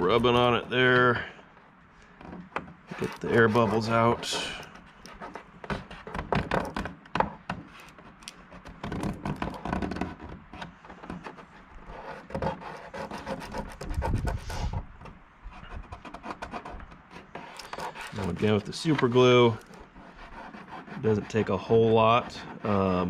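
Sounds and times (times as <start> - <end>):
fingers rubbing on plastic: 2.3 - 23.0.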